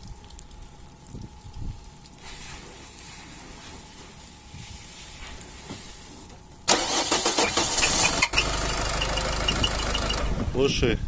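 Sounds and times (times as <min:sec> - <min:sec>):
diesel engine starting and running: 0:06.7 - 0:10.8
high chirps: 0:08.2 - 0:10.3.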